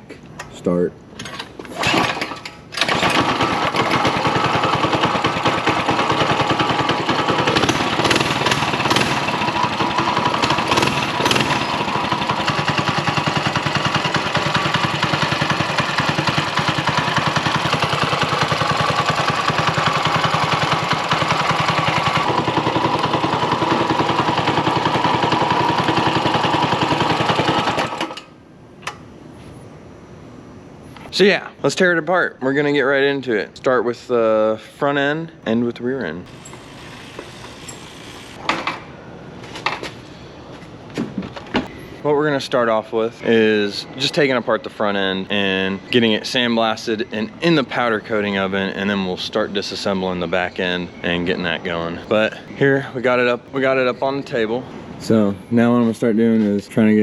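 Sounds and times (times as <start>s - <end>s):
small engine running: 2.8s - 28.2s, 36.3s - 38.4s.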